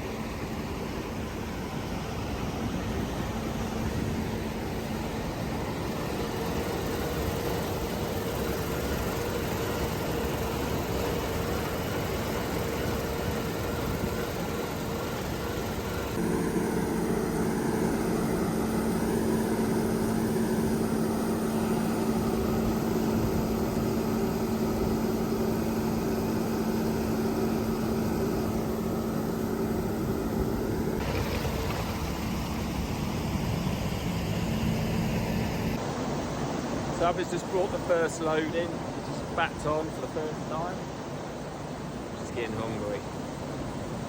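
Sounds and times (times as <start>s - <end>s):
diesel engine droning: 0.0s - 44.0s.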